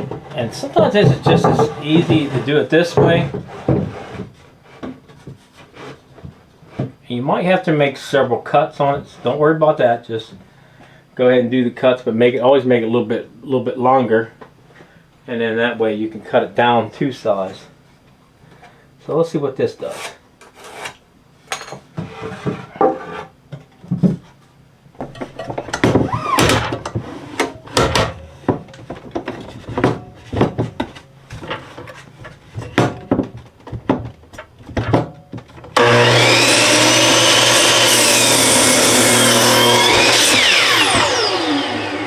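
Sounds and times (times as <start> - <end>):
wooden boards knocked and shuffled: 0.0 - 5.0, 27.8 - 36.4
electric miter saw cutting wood: 35.8 - 42.0.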